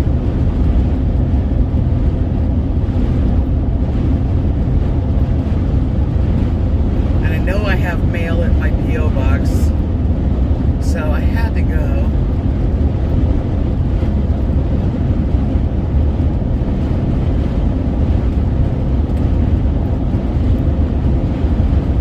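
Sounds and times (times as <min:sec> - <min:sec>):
vehicle rumble inside cabin: 0:00.0 - 0:22.0
wind against vehicle: 0:00.0 - 0:22.0.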